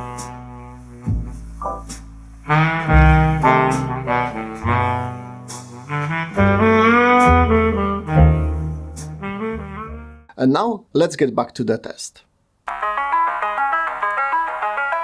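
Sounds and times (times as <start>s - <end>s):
jazz music with horn and bass: 0.0s - 10.3s.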